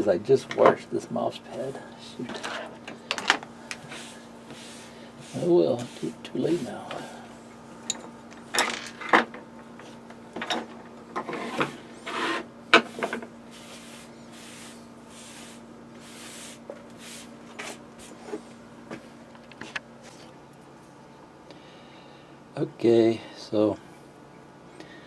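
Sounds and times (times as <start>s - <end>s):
soft brushing strokes: 3.8s - 7.7s, 12.9s - 18.6s.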